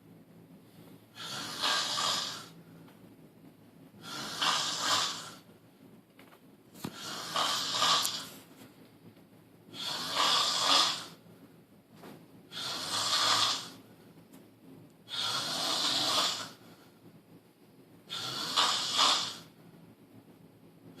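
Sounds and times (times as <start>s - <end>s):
quiet breathing: 0.5s - 3.2s, 15.1s - 17.3s
loud snoring: 1.1s - 2.6s, 4.0s - 5.4s, 6.9s - 8.3s, 9.7s - 11.2s, 12.5s - 13.8s, 15.1s - 16.6s, 18.1s - 19.5s.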